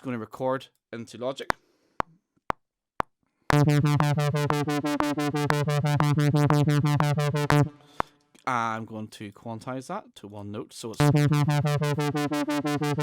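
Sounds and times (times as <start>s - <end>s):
buzzy synthesizer pulsing tone: 3.5s - 7.9s, 11.0s - 13.0s.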